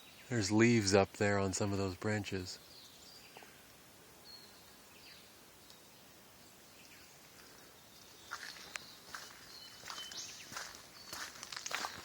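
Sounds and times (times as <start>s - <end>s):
rainforest ambience: 0.0s - 12.0s
footsteps crunching on path: 7.2s - 12.0s.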